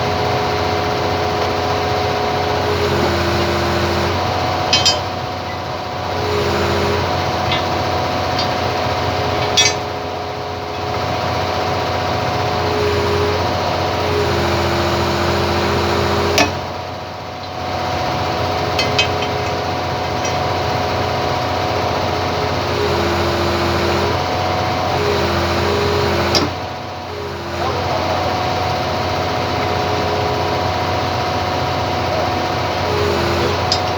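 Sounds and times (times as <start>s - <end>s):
excavator engine drone: 0.0s - 33.9s
whine changing pitch: 20.2s - 33.9s.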